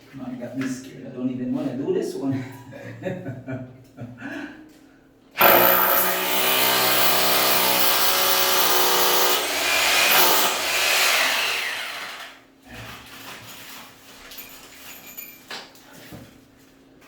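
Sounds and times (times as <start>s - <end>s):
power drill driving a screw: 5.4s - 12.4s.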